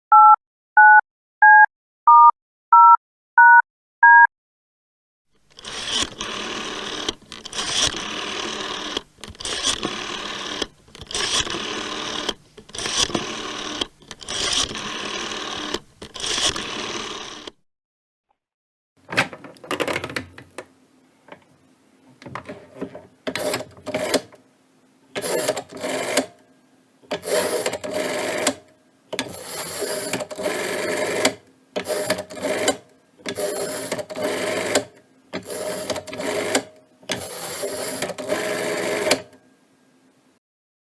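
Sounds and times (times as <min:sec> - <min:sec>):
rotary dial whirring and clicking: 0:05.5 - 0:17.6, 0:22.3 - 0:24.4, 0:25.2 - 0:26.3, 0:27.1 - 0:39.3.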